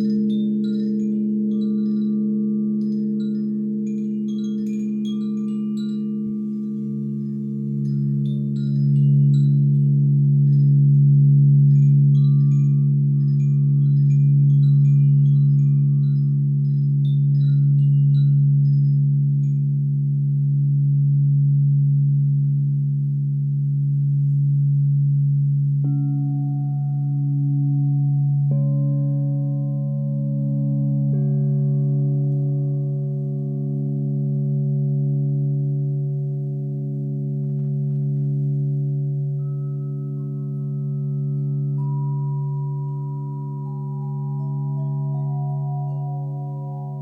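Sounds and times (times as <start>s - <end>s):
chimes tinkling: 0.0s - 19.9s, 36.5s - 47.0s
singing bowls droning: 0.0s - 47.0s.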